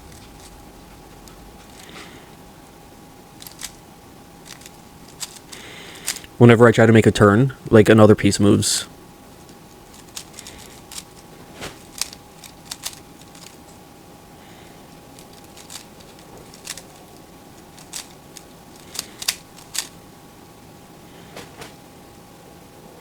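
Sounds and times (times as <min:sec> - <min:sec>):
puzzle cube clicking: 0:03.4 - 0:03.8, 0:04.4 - 0:06.4, 0:09.4 - 0:13.6, 0:15.2 - 0:20.0.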